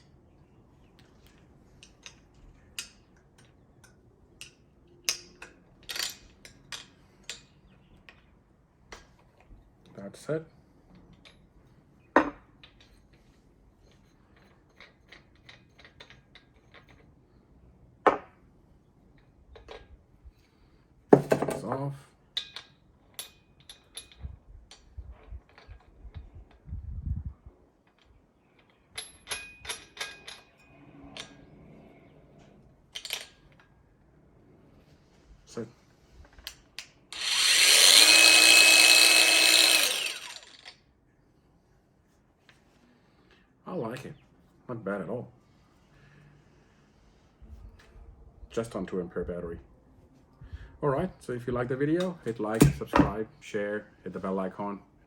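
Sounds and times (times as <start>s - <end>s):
angle grinder whining: 37.1s - 40.7s
sharp metallic knocks: 52.6s - 53.2s.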